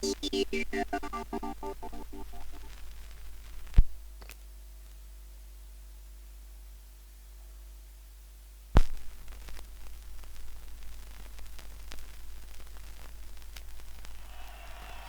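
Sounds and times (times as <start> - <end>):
record surface noise: 0.0 - 4.4, 8.8 - 15.0
crackle and static: 0.0 - 7.2, 8.0 - 15.0
faint hum: 0.0 - 8.2.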